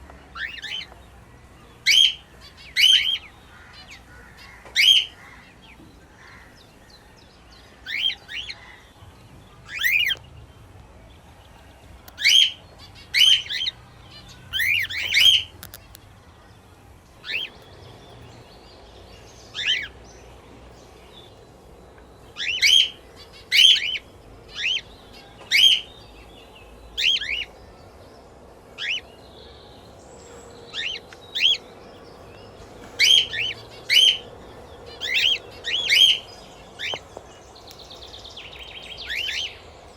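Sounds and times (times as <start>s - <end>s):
parrots chirping: 0.2s - 1.0s, 1.8s - 5.6s, 9.6s - 10.2s, 12.1s - 16.0s, 17.2s - 17.6s, 19.5s - 20.0s, 22.2s - 26.2s, 26.9s - 27.6s, 28.8s - 29.1s, 30.2s - 39.9s.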